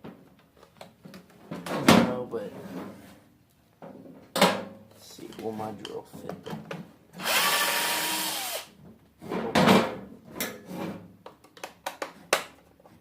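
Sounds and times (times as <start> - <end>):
power drill whining: 7.2 - 8.7.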